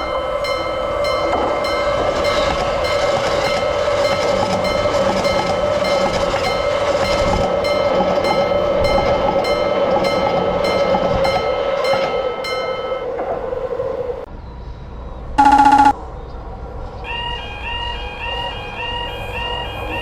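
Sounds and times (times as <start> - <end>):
level-crossing alarm ringing: 0.0 - 14.3, 15.4 - 16.0
train passing: 0.0 - 20.0.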